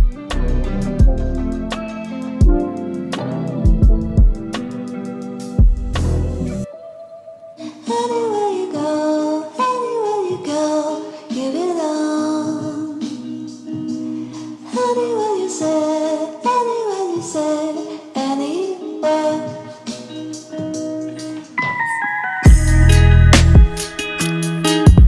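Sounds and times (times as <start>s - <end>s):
guitar accompaniment: 0.0s - 25.0s
woman singing: 6.6s - 22.1s.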